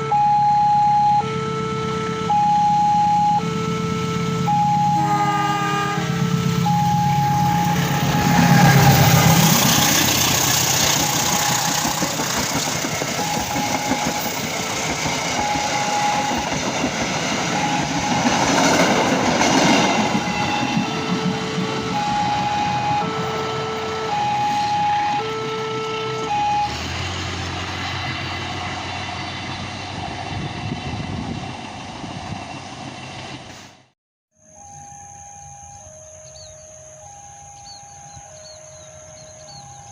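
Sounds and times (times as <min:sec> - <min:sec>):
electronic two-tone beeping: 0:00.0 - 0:01.3, 0:02.2 - 0:03.6, 0:04.4 - 0:05.0, 0:06.4 - 0:09.1, 0:10.8 - 0:12.1, 0:13.2 - 0:14.4, 0:15.3 - 0:16.6, 0:17.5 - 0:18.5, 0:20.0 - 0:26.7, 0:34.5 - 0:39.9
passenger train rumbling by: 0:03.0 - 0:33.9, 0:37.6 - 0:39.9.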